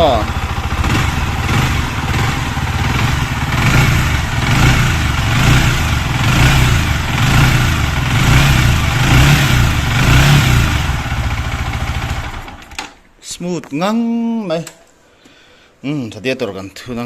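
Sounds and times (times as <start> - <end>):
motorcycle engine revving: 0.0 - 12.8.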